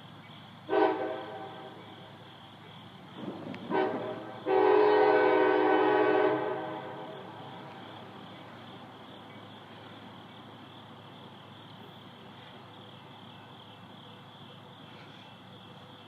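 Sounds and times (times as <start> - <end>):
crickets trilling: 0.0 - 16.0.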